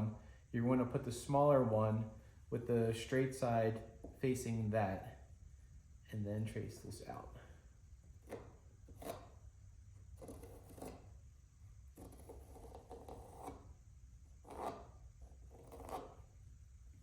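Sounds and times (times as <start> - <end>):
pencil scratching on wood: 8.2 - 9.4, 10.2 - 11.1, 11.9 - 13.7, 14.4 - 16.3.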